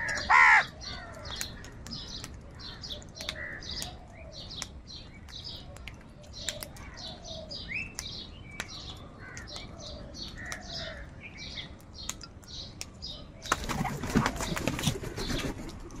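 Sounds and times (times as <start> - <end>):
crows calling: 0.0 - 4.0, 9.0 - 11.7
wings rustling and flapping: 13.5 - 16.0.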